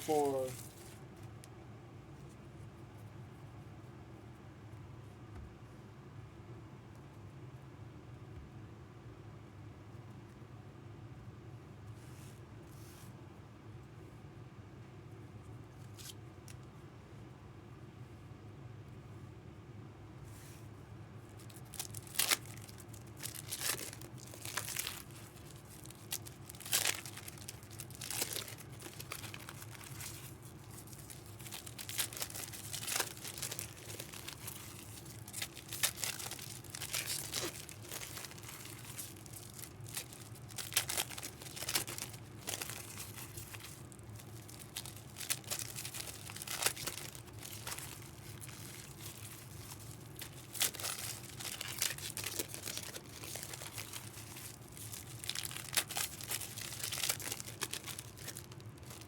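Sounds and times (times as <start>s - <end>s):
packaging wrap crinkling: 0.0s - 1.0s, 21.4s - 59.0s
low steady hum: 0.0s - 59.0s.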